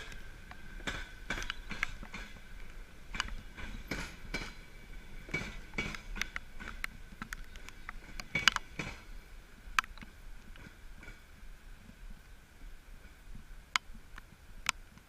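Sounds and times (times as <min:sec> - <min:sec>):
train wheels clicking on track: 0:00.0 - 0:11.5.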